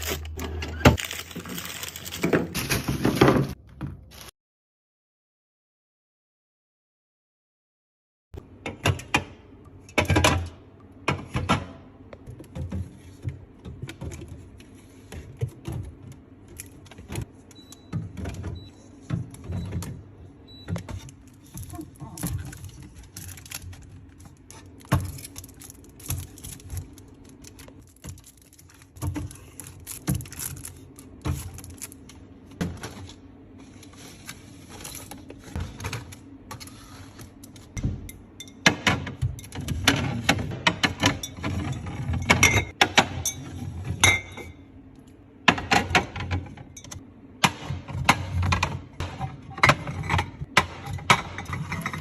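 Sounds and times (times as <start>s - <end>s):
packaged food clicking and rattling: 0.0s - 3.6s, 21.4s - 32.2s.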